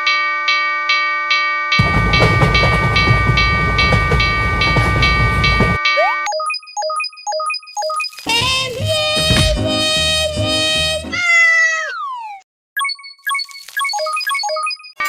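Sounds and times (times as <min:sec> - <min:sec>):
railroad crossing alarm ringing: 0:00.0 - 0:08.1
train rumbling past: 0:01.8 - 0:05.8
music: 0:08.2 - 0:11.2.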